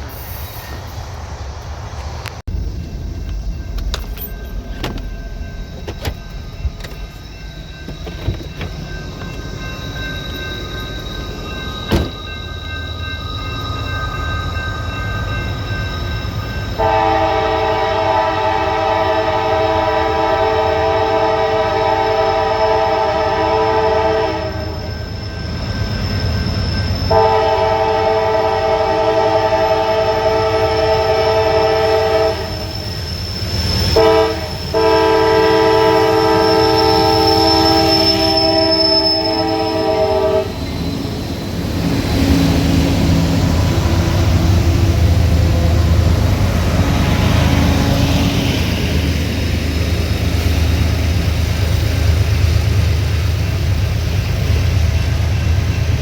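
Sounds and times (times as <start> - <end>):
freight train rumble: 0.0 - 56.0
locomotive air horn: 16.8 - 24.8, 27.1 - 32.7, 34.0 - 40.6.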